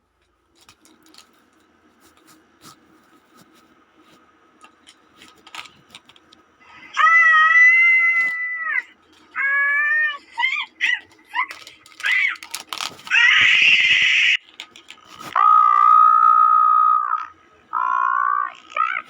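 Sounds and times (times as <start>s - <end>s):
cat yowling: 6.9s - 12.4s.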